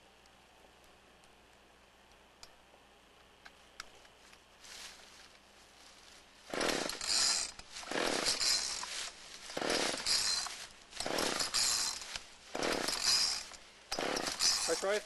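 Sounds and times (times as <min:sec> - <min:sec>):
chainsaw starter cord yanks: 0:06.5 - 0:08.9, 0:09.5 - 0:15.0.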